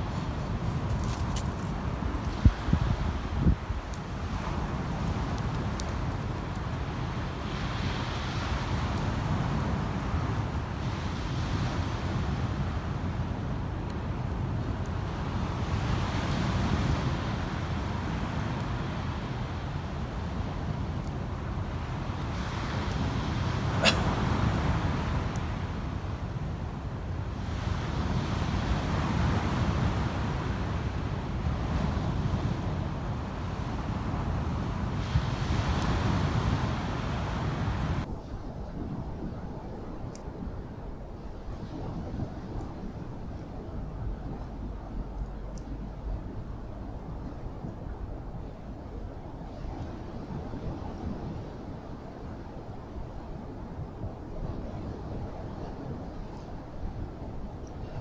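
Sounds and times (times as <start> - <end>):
surf washing: 0.0 - 38.1
wind buffeting microphone: 0.0 - 58.0.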